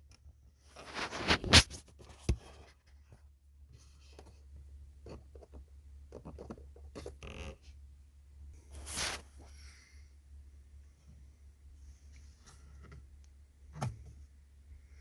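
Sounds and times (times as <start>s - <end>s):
hands scraping and rustling: 0.7s - 3.2s, 8.6s - 9.6s.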